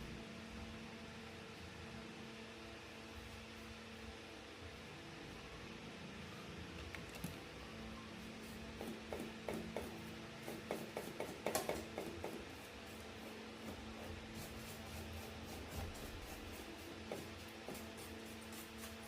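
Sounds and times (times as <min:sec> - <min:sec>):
faint hum: 0:00.0 - 0:10.7.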